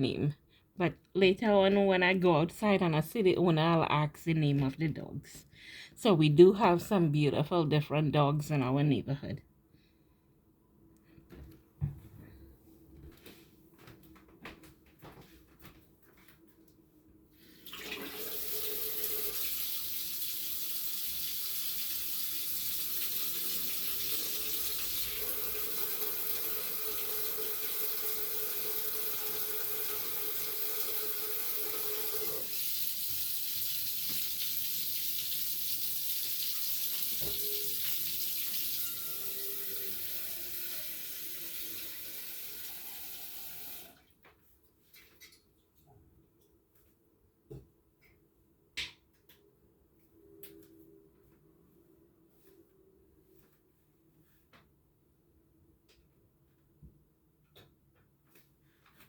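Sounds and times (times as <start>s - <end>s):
tap running into a sink: 25.8s - 38.7s.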